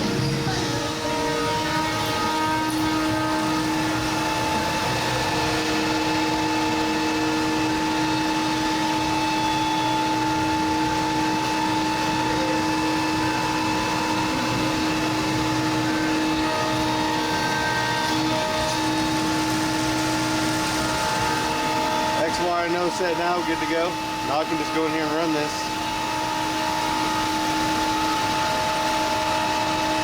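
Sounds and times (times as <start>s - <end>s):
cnc router whine: 0.0s - 30.0s.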